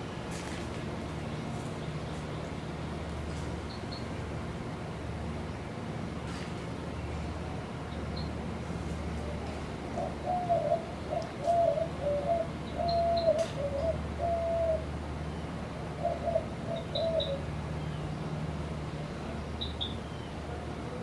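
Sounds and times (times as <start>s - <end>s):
dove cooing: 9.9s - 14.9s, 16.0s - 17.5s.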